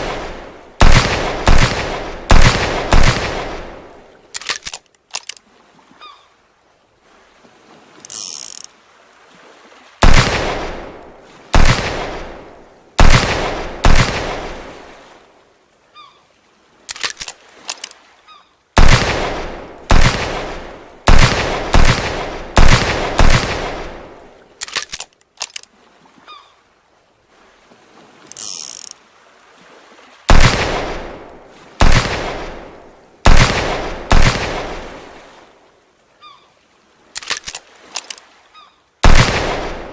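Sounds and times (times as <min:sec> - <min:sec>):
revolver gunshots echoing: 0:00.0 - 0:03.9, 0:10.0 - 0:11.0, 0:11.6 - 0:14.6, 0:18.8 - 0:24.1, 0:30.3 - 0:34.9, 0:39.0 - 0:39.9
mechanical cocking clicks: 0:04.3 - 0:05.4, 0:16.9 - 0:18.0, 0:24.6 - 0:25.7, 0:37.2 - 0:38.2.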